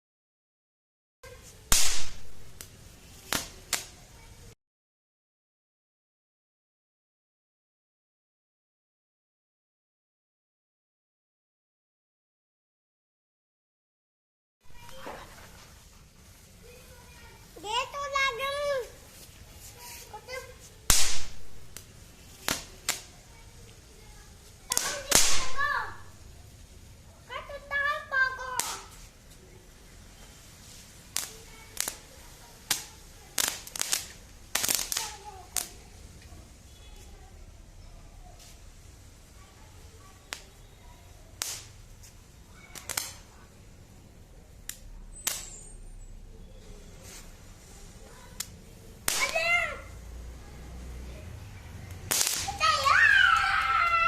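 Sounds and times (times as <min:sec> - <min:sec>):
firecrackers cracking: 0:01.3 - 0:04.5, 0:14.7 - 0:37.2, 0:38.3 - 0:46.1, 0:46.9 - 0:54.0.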